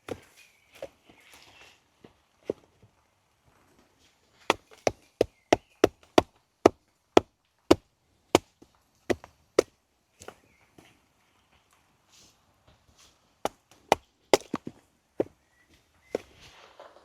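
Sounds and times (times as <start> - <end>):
wood being chopped: 0.0 - 0.3, 4.5 - 10.4, 13.4 - 15.4, 16.1 - 16.4.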